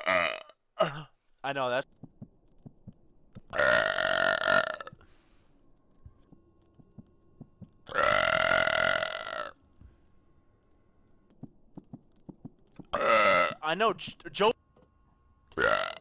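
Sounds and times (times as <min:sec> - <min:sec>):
man burping loudly: 0:00.0 - 0:01.1, 0:12.9 - 0:13.6, 0:15.6 - 0:16.0.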